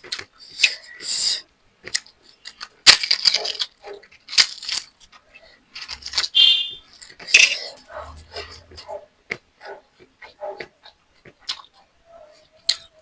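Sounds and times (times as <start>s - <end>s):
scraping and eating noises: 0.0s - 13.0s.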